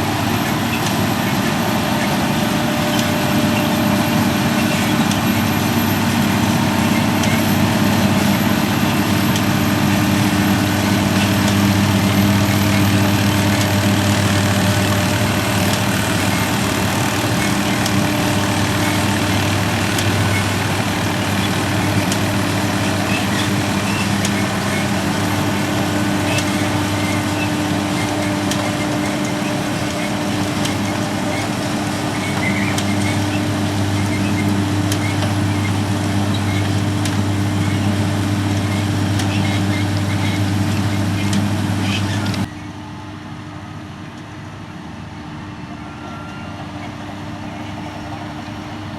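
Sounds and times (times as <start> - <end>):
diesel farm machinery engine drone: 0.0 - 48.9
mechanical noise: 0.1 - 42.6.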